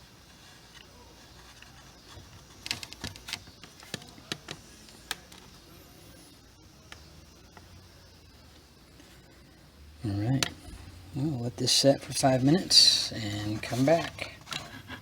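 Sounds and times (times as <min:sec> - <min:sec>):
plastic parts clicking and tapping: 0:01.6 - 0:05.5.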